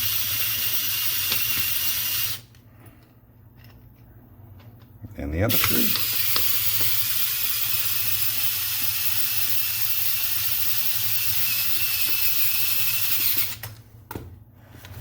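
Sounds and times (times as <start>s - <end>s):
power screwdriver whining: 0.0s - 2.4s, 5.6s - 13.6s.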